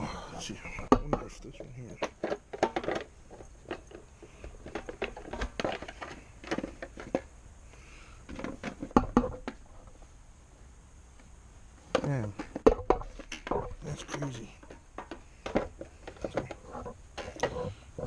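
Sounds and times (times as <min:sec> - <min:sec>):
clicks and knocks on motorcycle parts: 0:00.8 - 0:07.3, 0:08.3 - 0:09.6, 0:11.9 - 0:13.8, 0:14.6 - 0:16.6.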